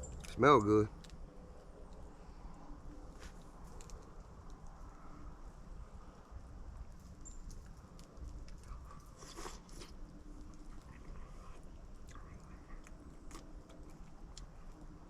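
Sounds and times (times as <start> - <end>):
person chewing food: 7.5 - 15.0.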